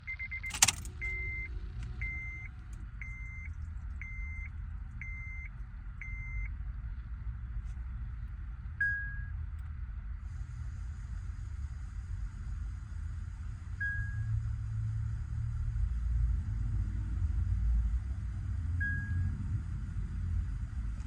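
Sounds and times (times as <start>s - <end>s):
car warning chime beeping: 0.0s - 6.5s
steady low rumble: 0.0s - 21.0s
sharp click: 0.4s - 0.9s.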